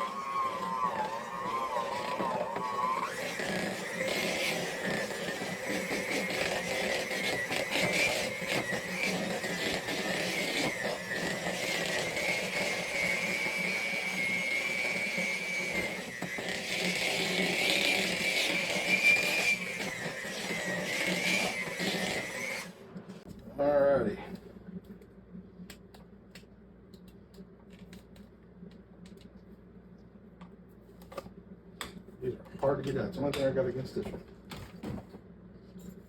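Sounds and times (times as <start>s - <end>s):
electric mixer whining: 0.0s - 23.2s.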